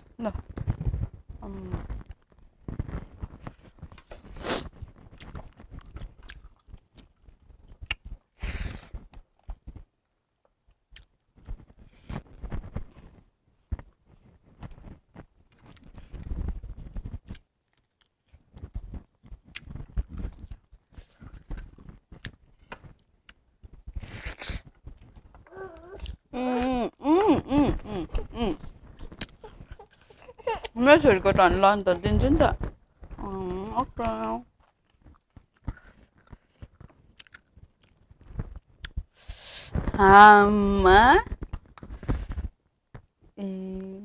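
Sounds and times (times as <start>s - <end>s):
chewing and biting food: 5.0s - 8.2s, 28.1s - 30.8s, 34.5s - 39.1s.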